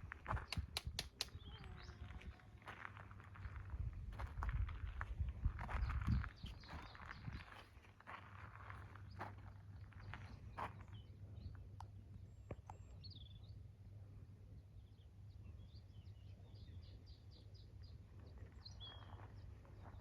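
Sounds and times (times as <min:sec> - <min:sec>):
sharp clicks: 0:00.5 - 0:01.4
faint bird chirping: 0:05.8 - 0:07.6, 0:14.6 - 0:20.0.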